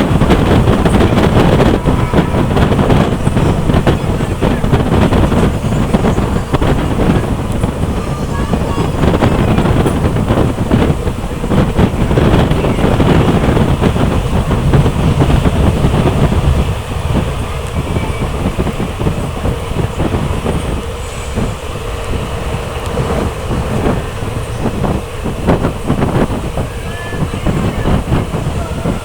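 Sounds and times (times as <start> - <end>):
clickety-clack over rail joints: 0.0 - 29.0
train wheels rumbling: 0.0 - 29.0.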